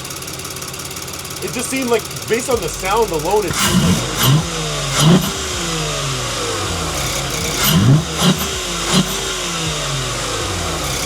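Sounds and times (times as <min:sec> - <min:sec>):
car engine idling and revving: 0:00.0 - 0:11.0.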